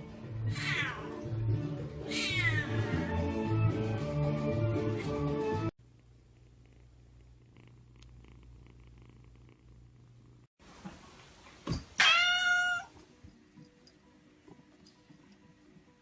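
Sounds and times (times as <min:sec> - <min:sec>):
cat meowing: 0:00.5 - 0:01.1, 0:02.0 - 0:03.0, 0:12.0 - 0:13.0
cat purring: 0:05.8 - 0:10.5.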